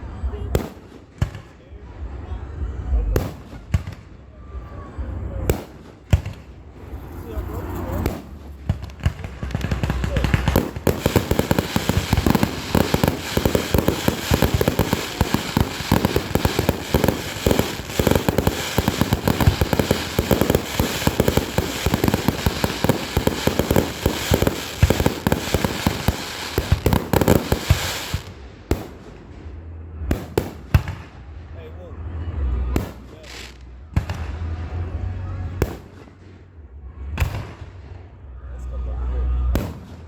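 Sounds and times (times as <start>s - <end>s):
rapid crackling pops: 8.0s - 28.2s.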